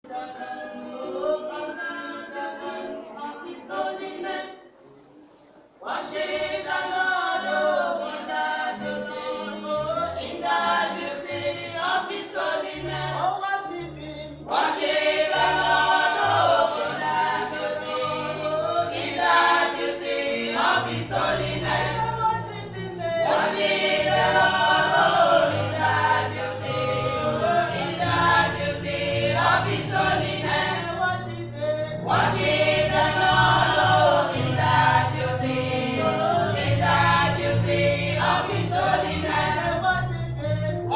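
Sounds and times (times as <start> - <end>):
choir singing gospel: 0.1 - 4.8, 5.7 - 40.9.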